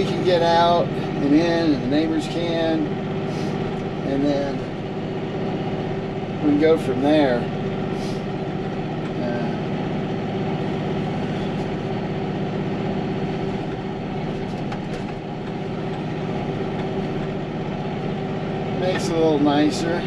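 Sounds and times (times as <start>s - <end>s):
tractor engine running steadily: 0.0s - 20.0s.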